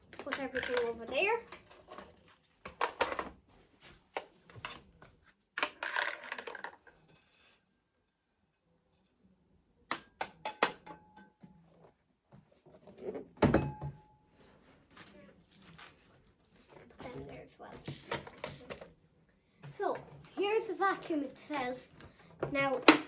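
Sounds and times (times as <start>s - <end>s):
vacuum accessories clicking and knocking: 0.0s - 3.4s, 4.2s - 7.0s, 22.0s - 23.0s.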